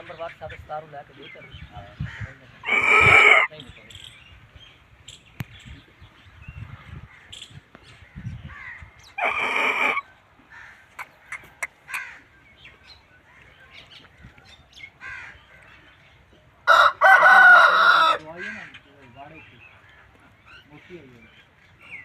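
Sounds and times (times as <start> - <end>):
chickens chirping and peeping: 0.0 - 22.0
chicken harsh squawk: 2.6 - 3.5, 9.2 - 10.0.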